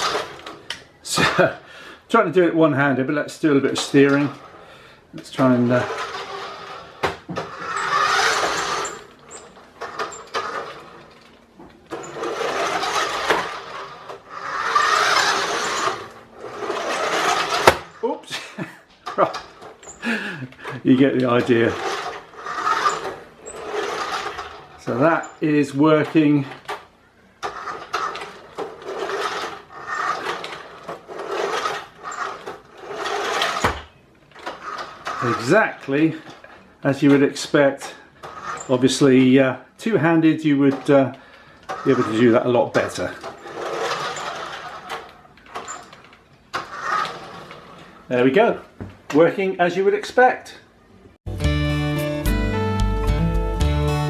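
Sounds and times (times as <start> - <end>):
toy car motor whirring: 0.0 - 1.4, 5.4 - 11.3, 11.9 - 18.0, 19.1 - 39.3, 40.6 - 48.2.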